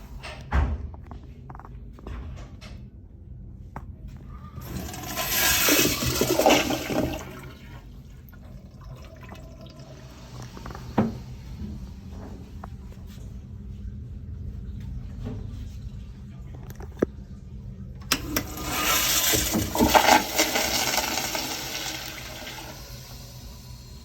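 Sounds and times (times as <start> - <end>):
toilet flushing: 4.6 - 12.5, 18.0 - 24.0
water trickle: 7.9 - 10.6.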